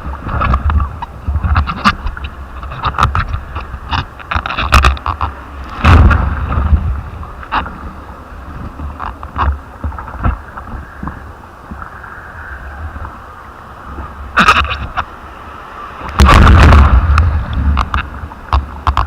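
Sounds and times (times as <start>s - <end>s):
wind buffeting microphone: 0.0s - 19.0s
knocks and bumps: 0.3s - 7.8s, 16.1s - 19.0s.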